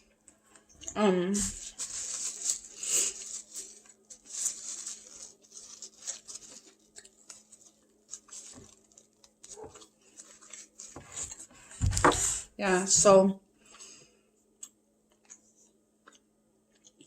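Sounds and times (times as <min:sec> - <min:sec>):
chewing food: 0:06.2 - 0:11.5, 0:14.6 - 0:17.0.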